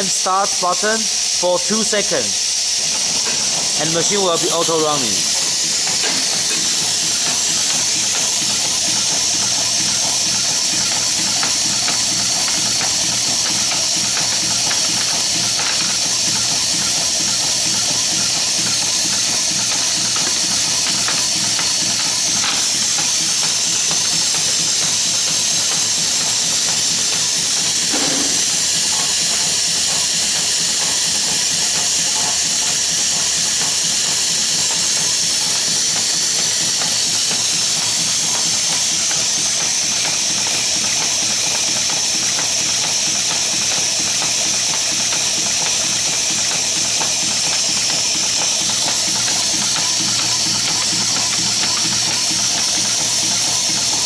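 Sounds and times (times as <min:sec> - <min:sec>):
pneumatic hiss: 0:00.0 - 0:42.5
machine clicking and rattling: 0:02.8 - 0:54.0.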